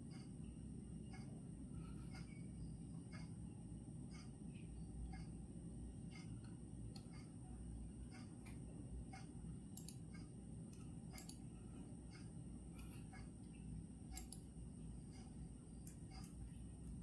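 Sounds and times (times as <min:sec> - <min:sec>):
low background noise: 0:00.0 - 0:17.0
clock ticking: 0:06.1 - 0:07.4, 0:08.0 - 0:16.4.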